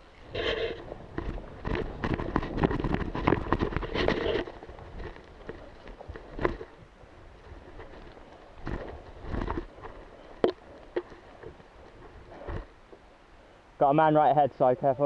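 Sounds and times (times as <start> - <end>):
wind on microphone: 0.0 - 12.8
gear knocking and rustling: 0.0 - 13.0.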